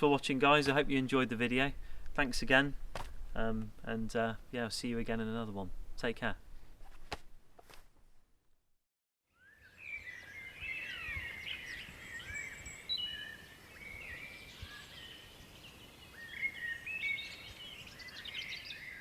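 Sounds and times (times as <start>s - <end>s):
small birds chirping and twittering: 9.3s - 19.0s.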